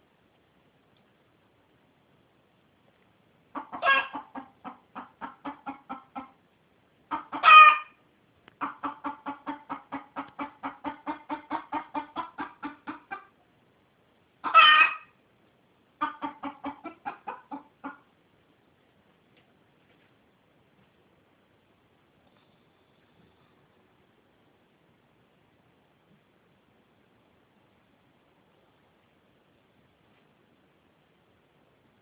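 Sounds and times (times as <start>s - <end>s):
chicken clucking: 3.5s - 6.4s, 7.1s - 13.4s, 14.4s - 15.2s, 16.0s - 18.1s
chicken squawking: 3.6s - 6.4s, 7.1s - 8.0s, 8.6s - 13.3s, 14.4s - 15.2s, 16.0s - 18.0s.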